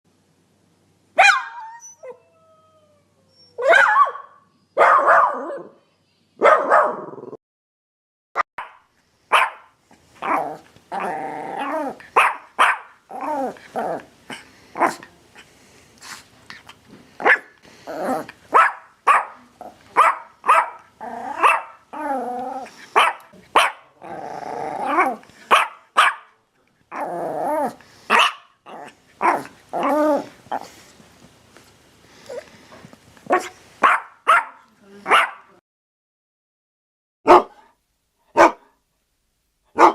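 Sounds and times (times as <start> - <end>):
dog barking: 1.2 - 1.7, 3.6 - 5.8, 6.4 - 7.2, 8.6 - 10.4, 12.2 - 13.0, 14.8 - 15.0, 17.2 - 17.5, 18.5 - 21.8, 23.0 - 23.9, 25.5 - 26.4, 28.1 - 28.5, 33.3 - 35.5, 37.3 - 37.7, 38.3 - 38.8
dog growling: 7.0 - 7.4, 10.2 - 12.2, 13.1 - 15.4, 17.6 - 18.4, 19.5 - 20.0, 21.0 - 25.4, 26.9 - 30.9.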